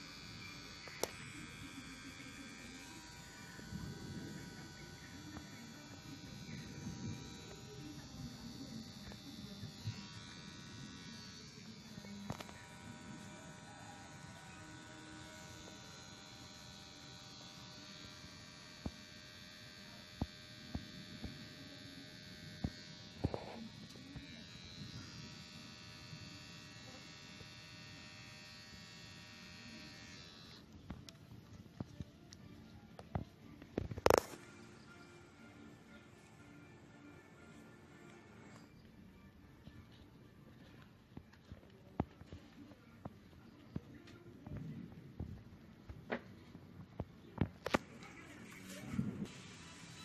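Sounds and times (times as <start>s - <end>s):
electric hair clipper buzzing: 0.0s - 39.1s, 47.6s - 50.0s.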